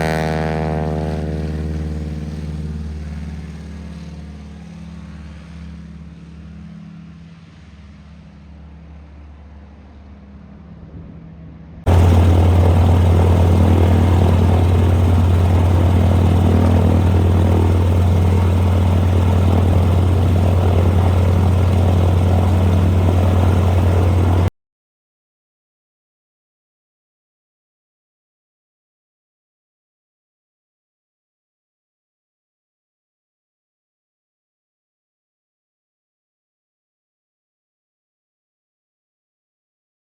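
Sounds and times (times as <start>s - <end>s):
aircraft engine and propeller: 0.0s - 10.2s, 11.9s - 24.5s.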